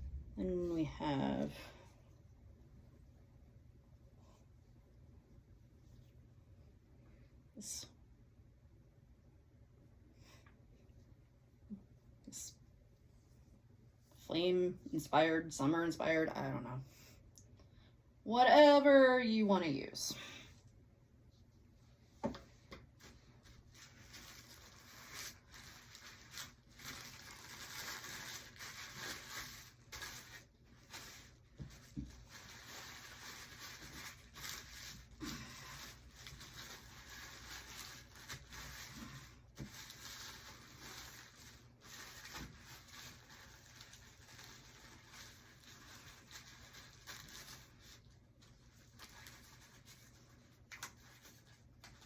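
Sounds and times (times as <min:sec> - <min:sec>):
rustling of shirts and packaging: 0:22.4 - 0:52.0.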